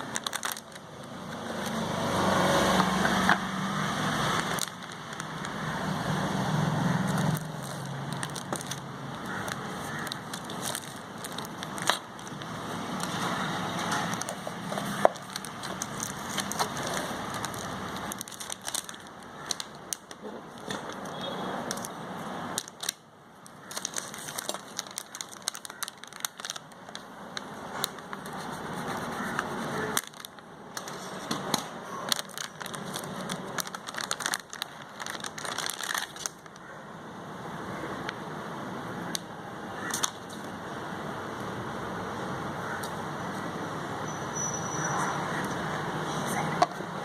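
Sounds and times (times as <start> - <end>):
plastic and cardboard crinkling: 0.0 - 1.8, 4.1 - 5.7, 7.0 - 36.7.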